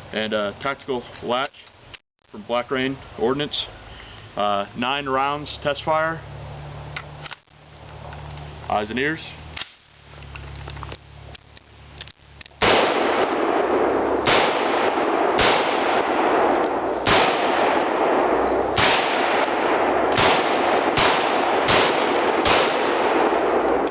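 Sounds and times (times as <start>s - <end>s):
loud steady hiss: 0.0s - 23.9s
rifle shots: 12.6s - 23.9s.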